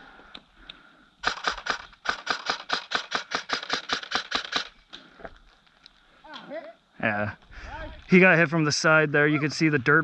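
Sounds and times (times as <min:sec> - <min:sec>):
faint clicks: 0:00.2 - 0:01.8
airsoft rifle firing rapid shots: 0:01.2 - 0:04.8.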